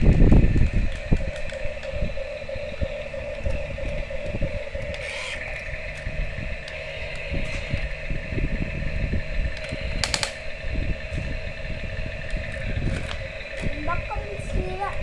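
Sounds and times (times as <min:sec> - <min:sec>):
small motor humming: 0:00.0 - 0:15.0.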